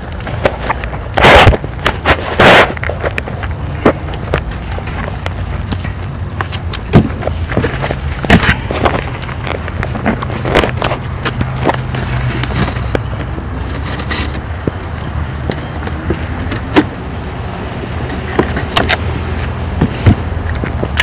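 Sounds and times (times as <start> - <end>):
vehicle running rumble: 0.0 - 21.0.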